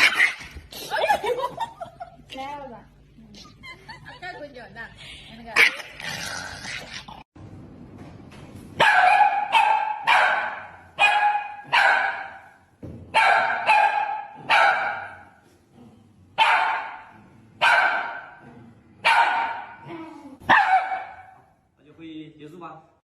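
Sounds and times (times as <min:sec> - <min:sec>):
dog barking: 0:08.8 - 0:15.3, 0:16.4 - 0:18.4, 0:19.0 - 0:19.8, 0:20.4 - 0:21.5.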